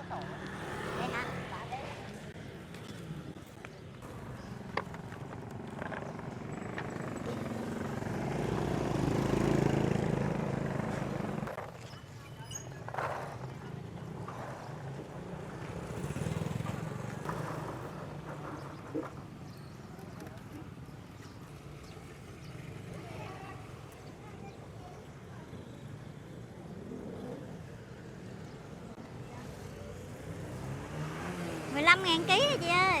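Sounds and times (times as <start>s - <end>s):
vehicle engine running: 4.0s - 11.6s.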